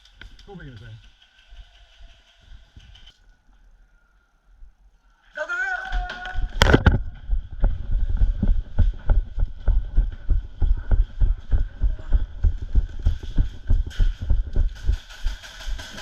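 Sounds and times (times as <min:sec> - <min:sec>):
running footsteps thumping: 0:05.9 - 0:16.0.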